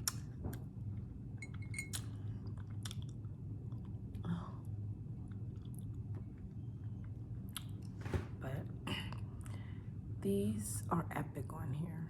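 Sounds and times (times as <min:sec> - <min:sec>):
low steady hum: 0:00.0 - 0:12.0
chewing crunchy taco: 0:01.9 - 0:04.2, 0:05.2 - 0:07.9.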